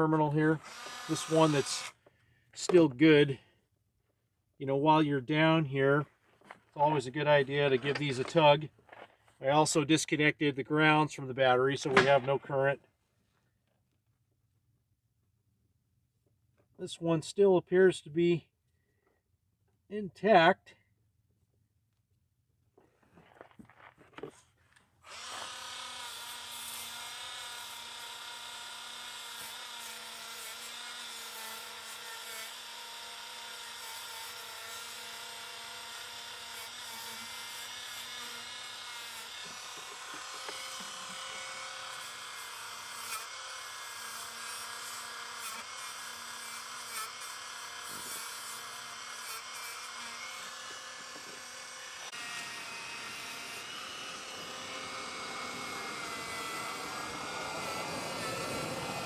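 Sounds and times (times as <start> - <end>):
rotary tool whining: 0.5 - 2.8, 25.0 - 59.0.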